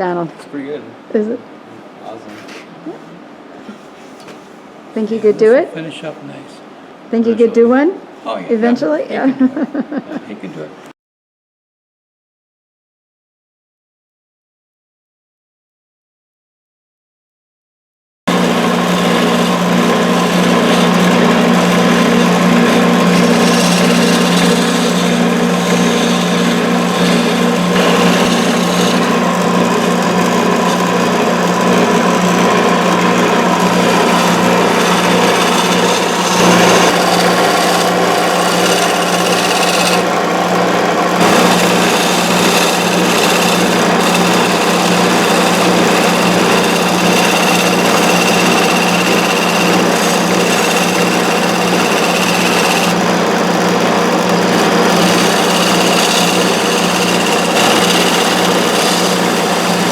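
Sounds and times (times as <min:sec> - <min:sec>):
power tool running: 0:18.3 - 0:59.9.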